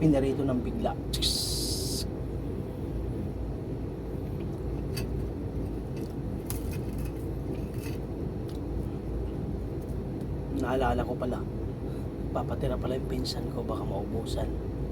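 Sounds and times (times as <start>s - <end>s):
low background hum: 0.0s - 14.9s.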